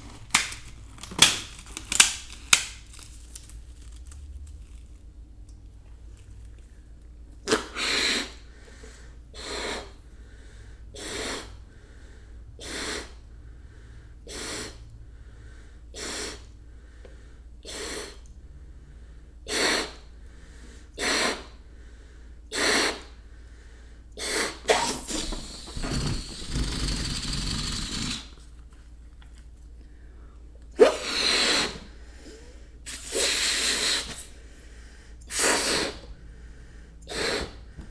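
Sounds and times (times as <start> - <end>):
air hissing out of balloon: 9.4 - 10.0, 12.6 - 13.2, 14.3 - 14.8, 16.0 - 16.4, 24.2 - 28.4, 30.8 - 34.5, 35.3 - 36.2, 37.1 - 37.9
breaths blown into balloon: 24.2 - 28.5, 30.8 - 34.5, 35.3 - 36.4, 37.1 - 37.9.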